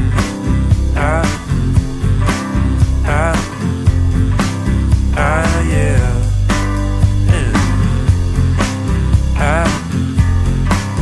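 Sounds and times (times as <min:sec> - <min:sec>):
pop song with steady beat: 0:00.0 - 0:11.0
person singing: 0:00.7 - 0:03.9, 0:05.1 - 0:06.5, 0:07.2 - 0:08.5, 0:09.2 - 0:10.2.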